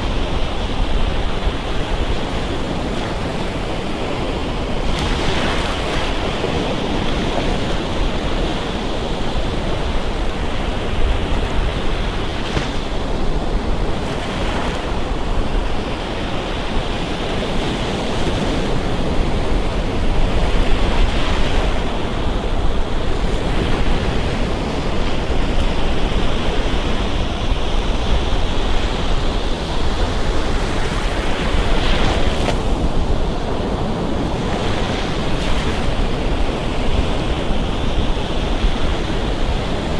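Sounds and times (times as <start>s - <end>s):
surf washing on sandy beach: 0.0s - 39.9s
wind on microphone: 0.0s - 39.9s.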